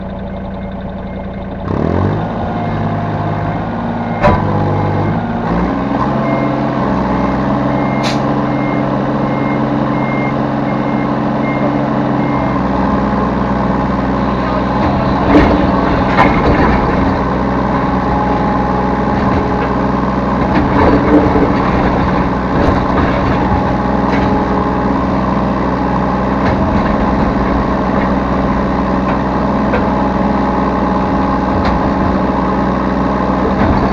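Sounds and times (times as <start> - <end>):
rapid high beeping alarm: 0.0 - 12.8
excavator diesel engine running: 0.0 - 33.9
sharp metal clanks: 8.0 - 8.4.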